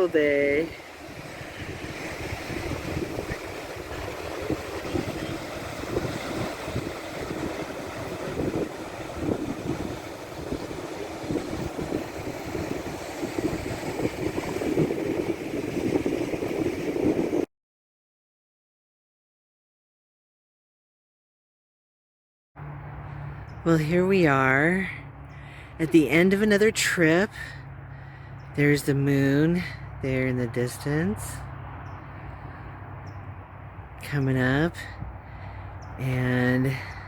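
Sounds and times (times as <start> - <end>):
ocean surf: 0.0 - 17.5
wind buffeting microphone: 0.1 - 17.5.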